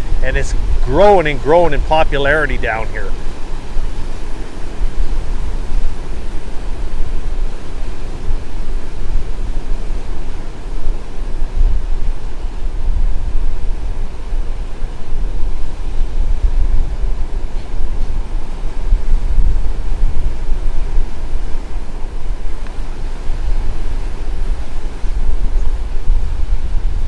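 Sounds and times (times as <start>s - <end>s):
wind buffeting microphone: 0.0s - 27.0s.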